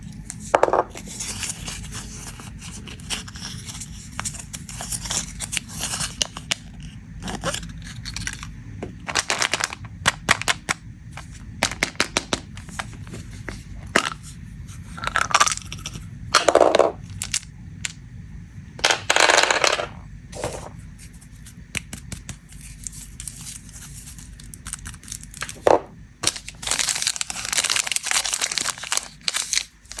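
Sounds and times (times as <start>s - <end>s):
low hum: 0.0s - 21.7s
plastic wrappers crinkling and tearing: 0.4s - 11.8s, 22.4s - 25.6s, 26.2s - 30.0s.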